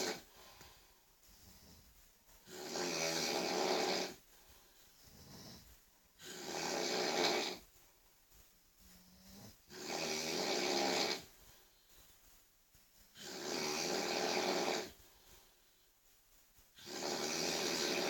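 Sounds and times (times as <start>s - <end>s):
person snoring loudly: 0.0s - 0.2s, 2.5s - 4.2s, 6.2s - 7.6s, 9.2s - 11.3s, 13.2s - 15.0s, 16.8s - 18.0s
quiet breathing: 0.0s - 18.0s.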